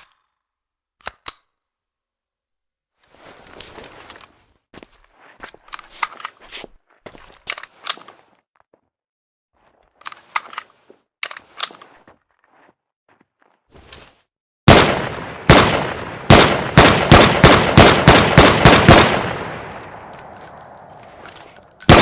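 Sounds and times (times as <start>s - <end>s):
rifle metallic clicks and clacks: 0.0s - 0.4s, 1.0s - 1.6s, 7.5s - 8.1s, 10.0s - 11.9s, 15.5s - 22.0s.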